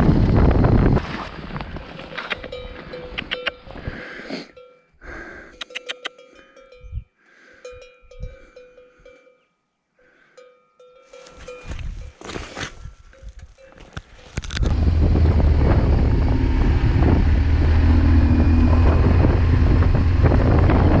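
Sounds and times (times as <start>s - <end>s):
cowbells clanking: 2.4s - 3.7s, 5.6s - 7.0s, 7.6s - 9.6s, 10.4s - 12.2s.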